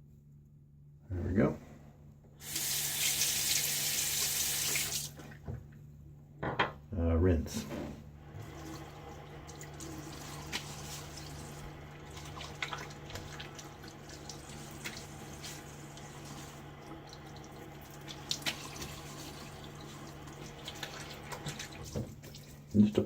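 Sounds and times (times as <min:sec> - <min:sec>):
faucet running into a sink: 0:02.4 - 0:05.2, 0:08.4 - 0:22.0.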